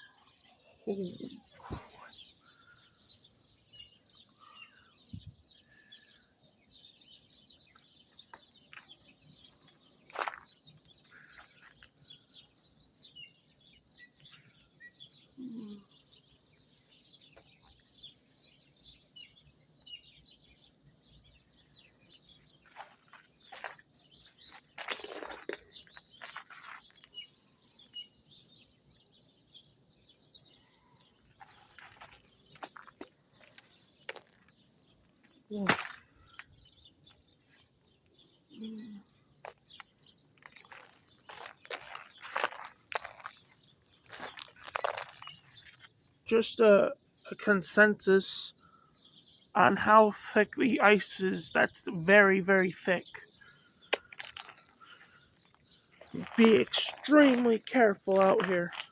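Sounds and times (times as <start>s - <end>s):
small birds chirping: 0.0s - 58.9s
sharp cracks or crunches: 10.1s - 10.5s, 22.7s - 27.2s, 31.4s - 34.6s, 35.5s - 36.8s, 39.4s - 45.9s, 53.9s - 58.9s.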